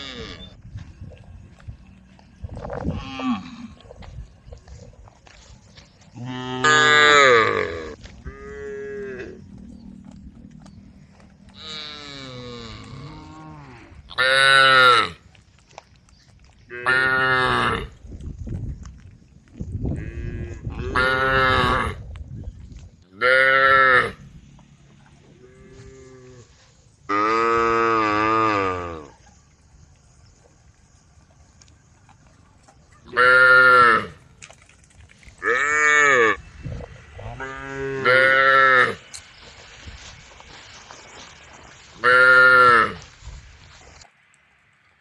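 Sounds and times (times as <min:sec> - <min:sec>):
cows mooing: 0:06.2 - 0:10.5, 0:11.5 - 0:15.2, 0:20.0 - 0:22.0, 0:23.2 - 0:24.2, 0:24.9 - 0:29.2, 0:33.1 - 0:34.2, 0:35.4 - 0:36.5, 0:37.1 - 0:39.0, 0:42.0 - 0:43.1.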